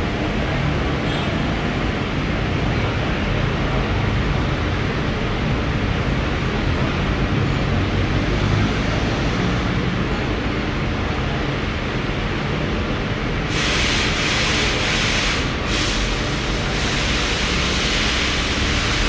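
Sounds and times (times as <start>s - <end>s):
welding machine humming and hissing: 13.5s - 19.0s.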